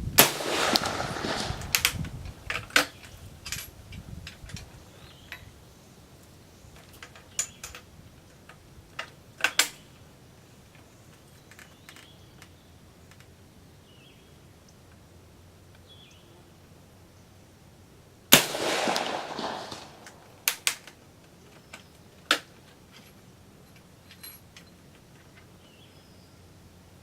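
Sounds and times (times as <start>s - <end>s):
rifle shot ringing out: 0.2s - 2.0s, 18.3s - 20.7s
sharp rifle clicks: 0.2s - 3.6s, 8.5s - 9.8s, 18.3s - 21.0s.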